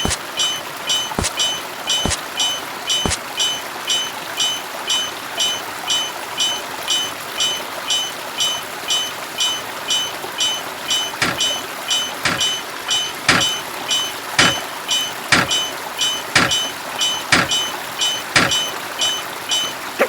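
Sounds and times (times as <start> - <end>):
railroad crossing alarm bell: 0.0 - 20.0.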